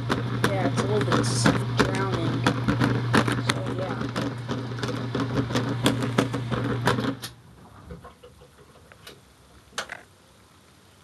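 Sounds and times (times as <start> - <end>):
washing machine running: 0.0 - 8.8.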